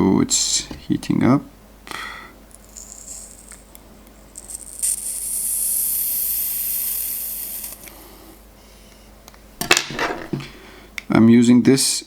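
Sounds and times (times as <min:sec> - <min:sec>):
high-pitched hiss: 0:02.6 - 0:03.6, 0:04.3 - 0:08.4.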